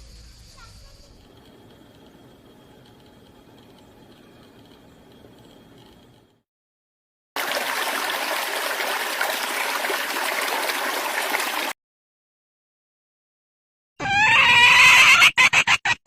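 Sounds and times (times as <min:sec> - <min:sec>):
flowing water rushing: 0:07.4 - 0:11.7.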